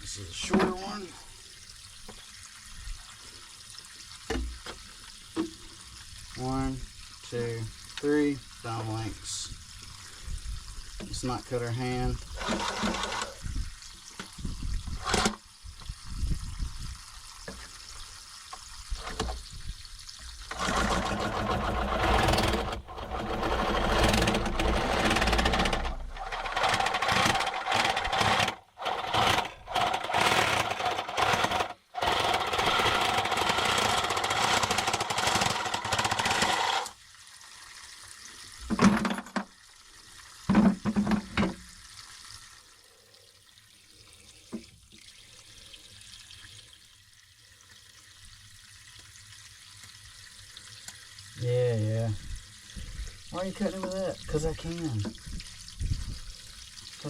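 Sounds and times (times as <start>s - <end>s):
power tool cutting pipe: 12.3s - 13.4s, 15.0s - 15.4s, 20.4s - 37.0s.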